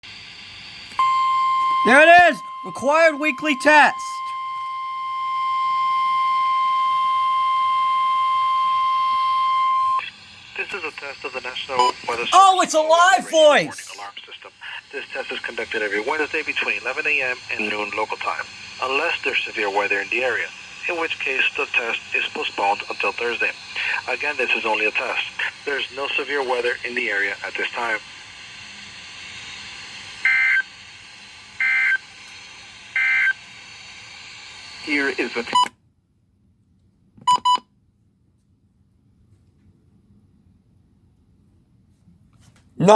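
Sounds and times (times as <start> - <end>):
digital data tone bursts: 1.0 - 4.3
steady high alarm tone: 1.0 - 10.0
radio hiss: 10.0 - 35.6.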